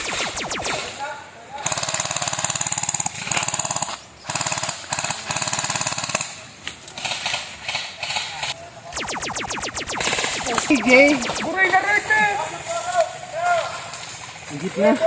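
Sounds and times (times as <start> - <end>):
airsoft guns firing full-auto: 0.0 - 6.3.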